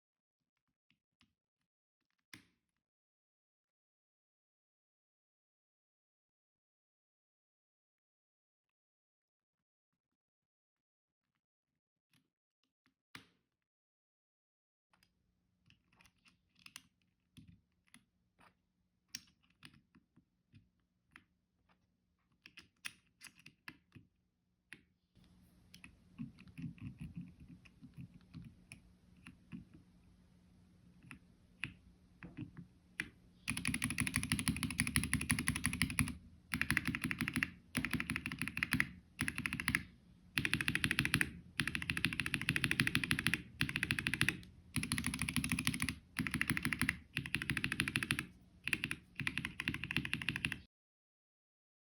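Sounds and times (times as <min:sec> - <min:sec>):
typing on keyboard: 0:33.0 - 0:50.7.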